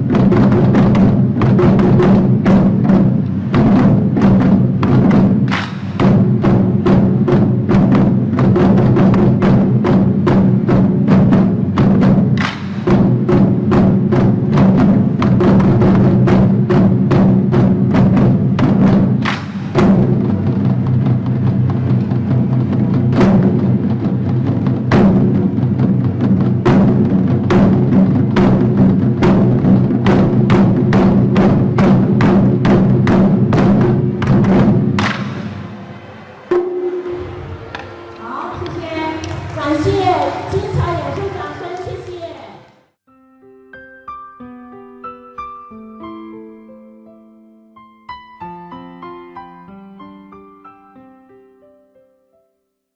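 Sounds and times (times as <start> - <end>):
taiko drums struck with sticks: 0.0 - 42.2
music backing track: 0.0 - 51.9.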